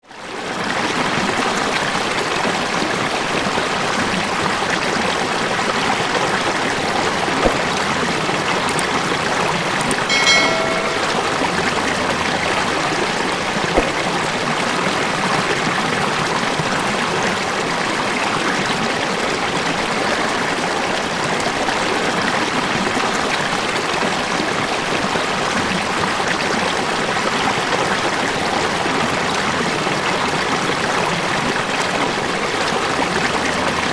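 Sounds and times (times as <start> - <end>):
short pitched note: 10.1 - 12.0.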